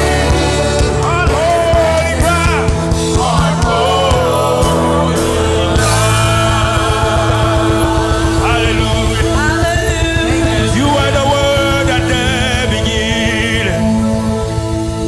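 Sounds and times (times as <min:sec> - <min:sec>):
person singing: 0:00.0 - 0:15.0
worship band playing: 0:00.0 - 0:15.0.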